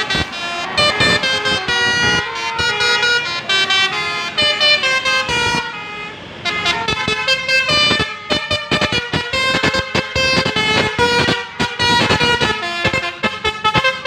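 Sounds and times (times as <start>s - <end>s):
multi-tone bus horn melody: 0.0s - 14.0s.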